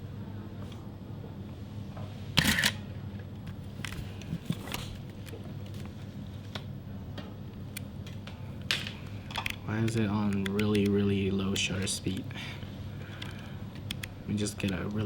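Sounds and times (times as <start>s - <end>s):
camera shutter clacks: 2.4s - 2.8s.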